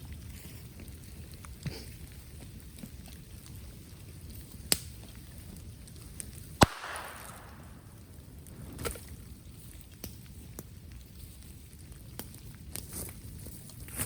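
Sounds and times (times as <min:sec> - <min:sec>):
bamboo popping in fire: 0:00.0 - 0:14.0
bonfire burning: 0:00.0 - 0:14.0.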